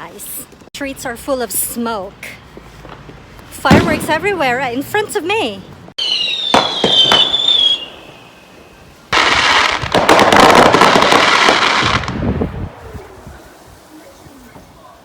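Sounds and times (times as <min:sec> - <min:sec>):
firework bangs: 0:03.6 - 0:04.6, 0:06.0 - 0:13.8
firework rapid crackling: 0:06.0 - 0:08.5, 0:09.1 - 0:14.1
whistling firework: 0:06.0 - 0:13.6.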